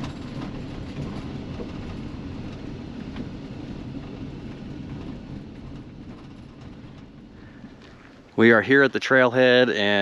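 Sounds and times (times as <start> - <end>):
light clicks and rattles: 0.0 - 8.4
vehicle road rumble: 0.0 - 10.0.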